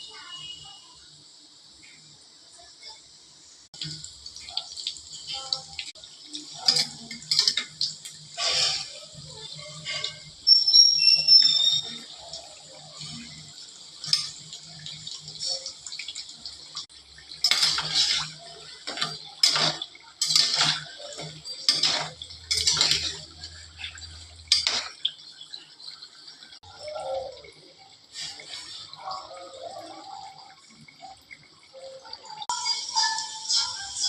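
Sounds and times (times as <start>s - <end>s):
water splashing from a tap: 3.7s - 33.8s
dishes and utensils clattering: 6.3s - 16.1s, 17.2s - 26.0s.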